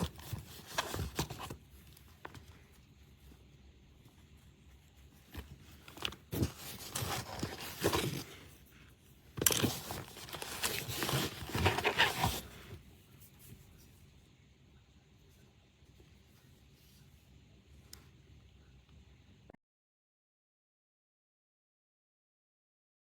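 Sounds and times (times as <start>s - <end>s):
rustling and clicking handling noises: 0.0s - 14.0s.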